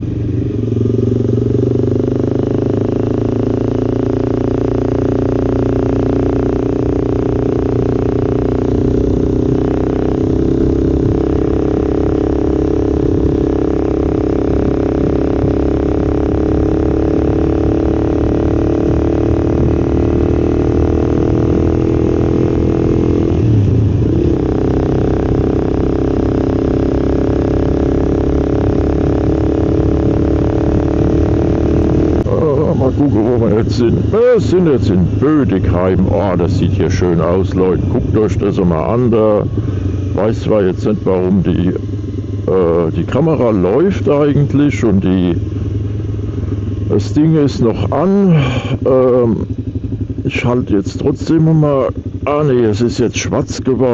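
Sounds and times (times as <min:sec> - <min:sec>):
motorcycle engine rising in pitch: 0:00.0 - 0:53.9.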